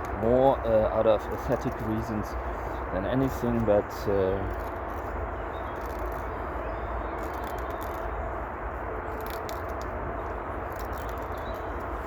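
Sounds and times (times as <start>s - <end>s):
knife scraping bamboo: 1.2s - 2.0s, 3.2s - 6.4s, 7.2s - 8.1s, 9.0s - 9.9s, 10.6s - 12.0s.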